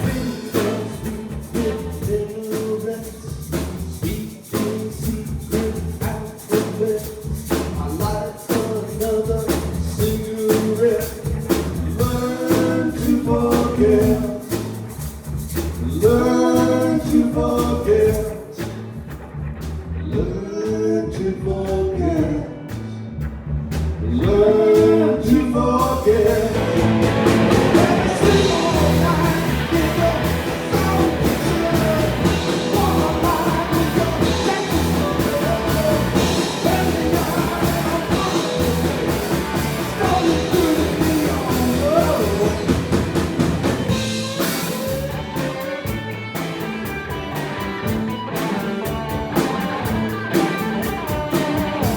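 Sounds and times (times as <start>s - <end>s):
rock band playing: 0.0s - 2.8s, 9.5s - 15.0s, 26.1s - 51.9s
person singing: 0.0s - 3.2s, 11.9s - 14.6s, 16.0s - 18.4s, 24.2s - 43.0s
drums: 0.0s - 51.9s.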